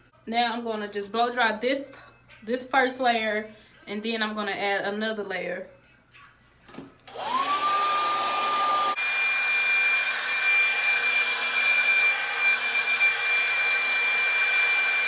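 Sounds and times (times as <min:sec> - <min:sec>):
blow dryer running: 0:07.1 - 0:15.0.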